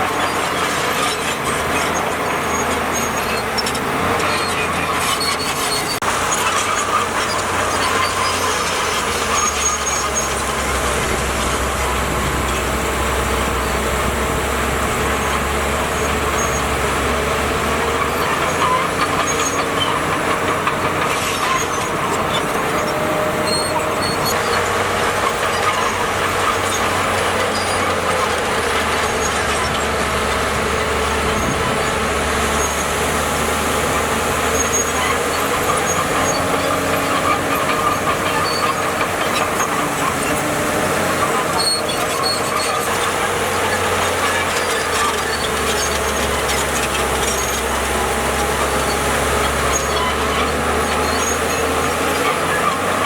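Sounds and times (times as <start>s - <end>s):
diesel engine running: 0.0s - 53.0s
heavy machinery clatter: 0.0s - 53.0s.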